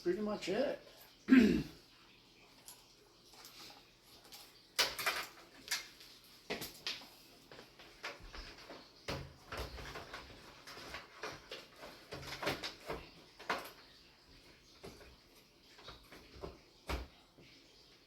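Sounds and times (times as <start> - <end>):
clicks and knocks handling computer parts: 4.3 - 7.0, 7.9 - 13.8.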